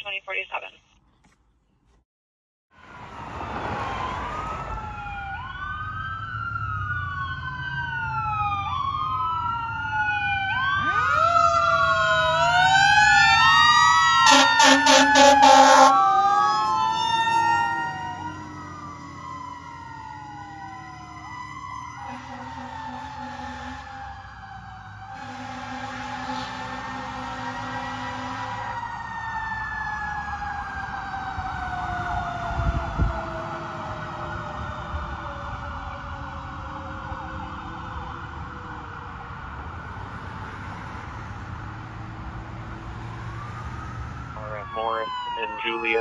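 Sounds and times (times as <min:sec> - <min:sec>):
fire engine siren wailing: 0:02.8 - 0:46.0
air horn blasts: 0:14.2 - 0:16.0, 0:22.1 - 0:24.0, 0:25.2 - 0:28.8.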